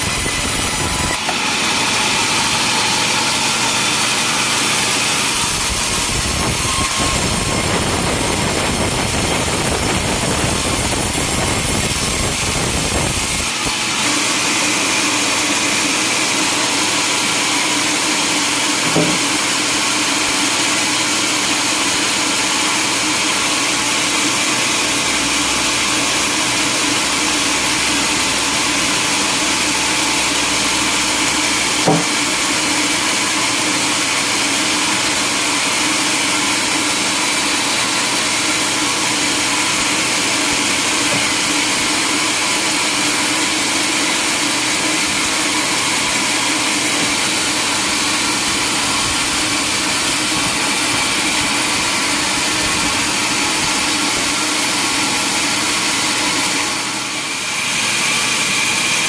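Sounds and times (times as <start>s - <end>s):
sawmill saw and engine: 0.0s - 59.0s
short knock: 18.8s - 19.3s, 31.9s - 32.2s.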